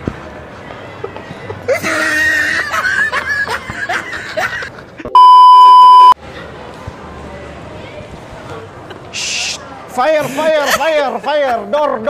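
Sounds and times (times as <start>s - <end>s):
censor bleep tone: 5.2s - 6.2s.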